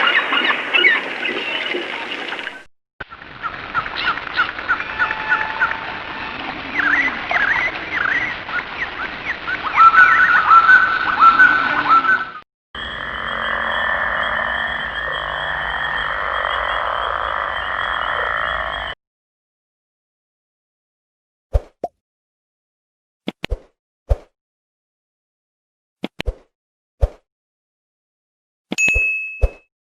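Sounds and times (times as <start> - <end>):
high steady tone: 28.8 - 29.6.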